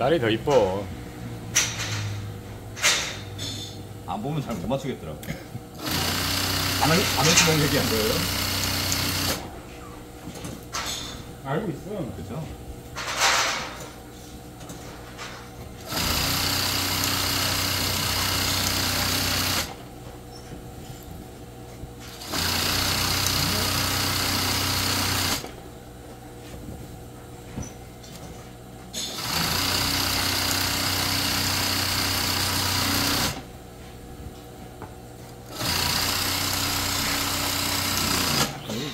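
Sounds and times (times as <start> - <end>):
industrial sewing machine stitching: 5.8 - 9.5, 15.8 - 19.9, 22.1 - 25.6, 29.0 - 33.5, 35.5 - 38.8.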